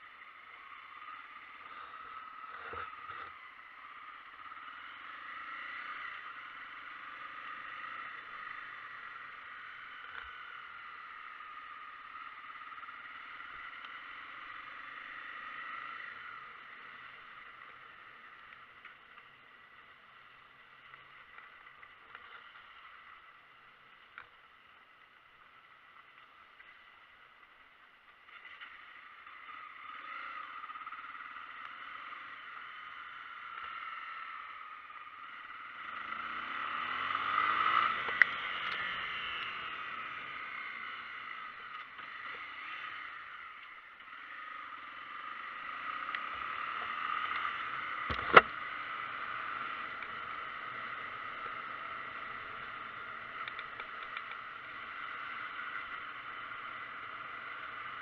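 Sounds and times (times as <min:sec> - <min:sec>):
vehicle driving on wet road: 0:35.7 - 0:58.0.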